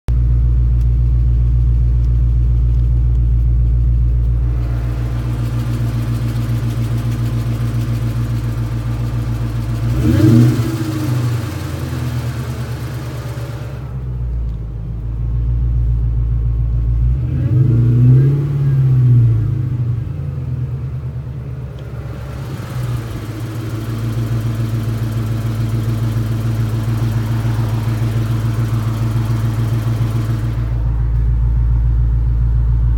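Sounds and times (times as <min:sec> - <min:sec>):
car engine idling: 0:00.1 - 0:32.9
engine revving: 0:04.4 - 0:14.1, 0:16.9 - 0:31.4.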